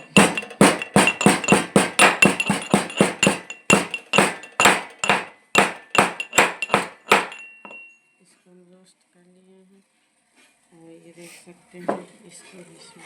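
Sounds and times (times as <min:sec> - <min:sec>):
metal pestle pounding in mortar: 0:00.0 - 0:07.8.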